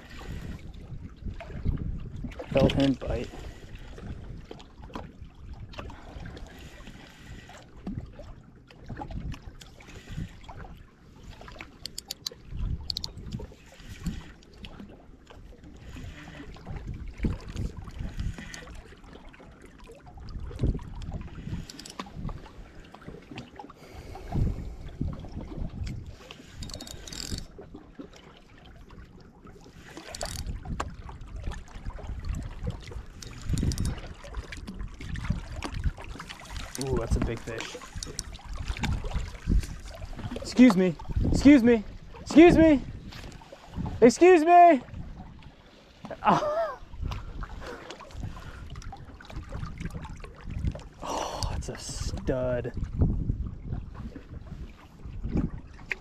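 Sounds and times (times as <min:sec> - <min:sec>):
wind buffeting microphone: 0:00.0 - 0:06.5, 0:07.8 - 0:15.0, 0:15.6 - 0:19.0, 0:20.1 - 0:23.3, 0:23.9 - 0:27.8, 0:29.8 - 0:44.1, 0:46.8 - 0:56.0
sharp clicks: 0:11.9 - 0:13.1, 0:26.6 - 0:27.5, 0:30.1 - 0:30.5, 0:33.2 - 0:34.0, 0:37.9 - 0:38.3.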